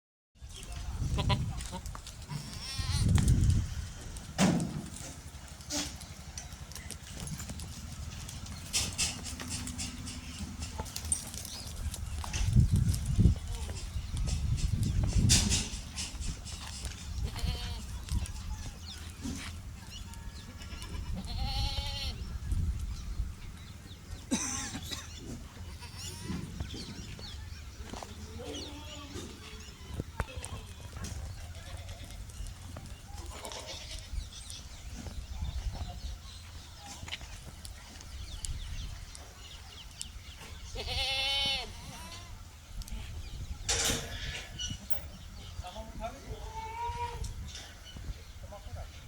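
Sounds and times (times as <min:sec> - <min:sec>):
goats bleating: 0:01.0 - 0:03.1, 0:17.2 - 0:18.0, 0:20.5 - 0:22.2, 0:25.5 - 0:26.5, 0:33.2 - 0:34.2, 0:40.7 - 0:42.3.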